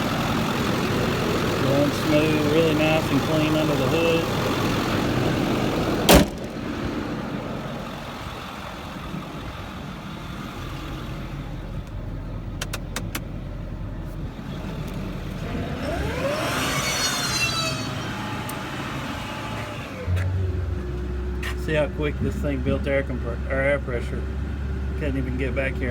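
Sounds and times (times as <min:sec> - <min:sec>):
diesel engine running: 0:00.0 - 0:25.9
sharp clicks: 0:12.6 - 0:13.3
air compressor whine: 0:15.1 - 0:21.2.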